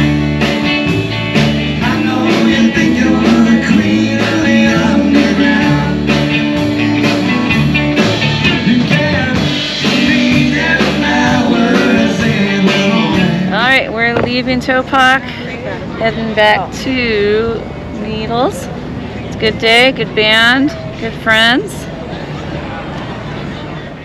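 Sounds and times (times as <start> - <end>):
rock music with singing: 0.0 - 14.8.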